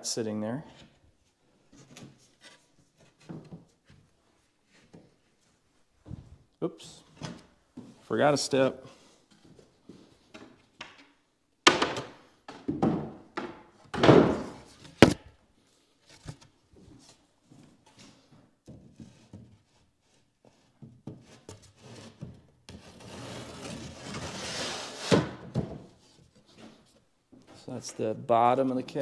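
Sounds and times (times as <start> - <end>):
rustling and scraping: 0.8 - 6.4, 14.3 - 28.0
wooden panels knocking: 11.7 - 15.2.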